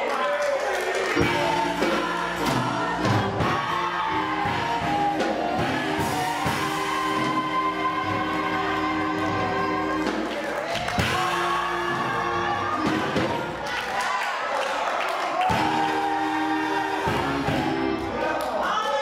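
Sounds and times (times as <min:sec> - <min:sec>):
gospel choir singing: 0:00.0 - 0:18.8
instrumental accompaniment: 0:01.1 - 0:13.7, 0:15.5 - 0:18.6
drum beat: 0:01.2 - 0:13.7, 0:15.4 - 0:16.3.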